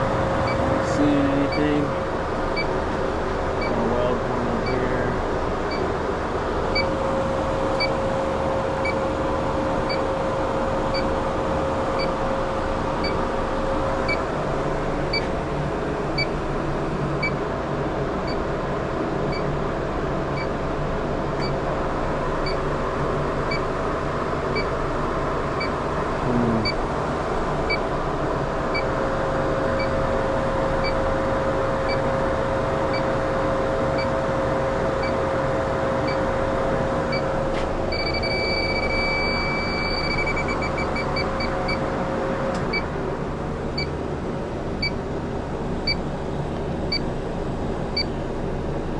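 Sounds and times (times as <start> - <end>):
refrigeration equipment humming: 0.0 - 48.9
leak detector ticking and beeping: 0.4 - 1.8, 2.5 - 2.8, 3.6 - 3.8, 4.6 - 4.9, 5.7 - 5.9, 6.7 - 7.0, 7.7 - 8.0, 8.8 - 9.0, 9.8 - 10.1, 12.0 - 12.2, 13.0 - 13.2, 14.0 - 14.2, 15.1 - 15.3, 29.8 - 30.0, 30.8 - 31.0, 32.9 - 33.1, 35.0 - 35.2, 36.0 - 36.3, 37.9 - 41.8.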